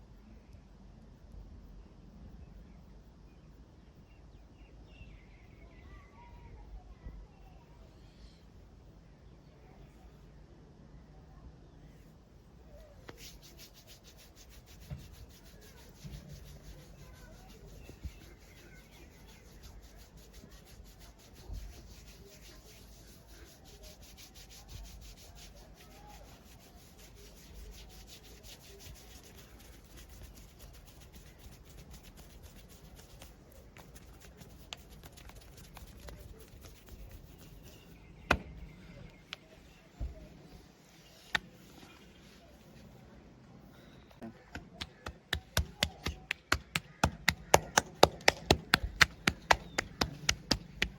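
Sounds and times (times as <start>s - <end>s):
hands rubbing over body: 12.7s - 38.0s, 40.5s - 43.0s, 44.6s - 50.9s.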